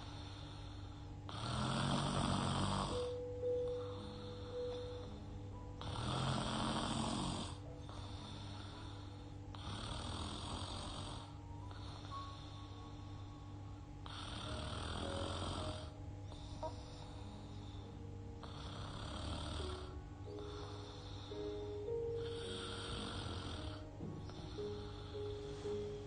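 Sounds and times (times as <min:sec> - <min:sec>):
woman snoring: 0:00.0 - 0:13.0, 0:14.0 - 0:26.0.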